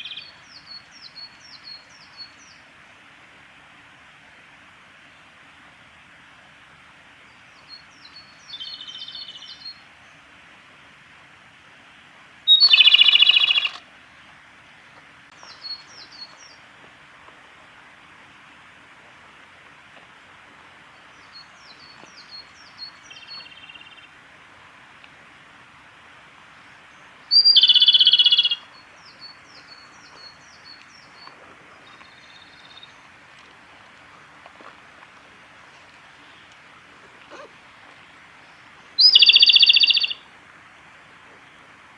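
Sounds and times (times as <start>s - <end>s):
background hiss: 0.0s - 41.9s
bird singing with rattling trill: 12.5s - 13.8s, 27.3s - 28.6s, 39.0s - 40.2s.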